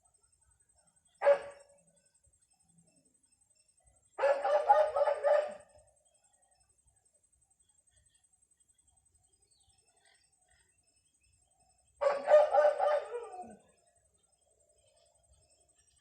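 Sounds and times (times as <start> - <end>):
dog-like animal yelp: 12.0 - 13.6.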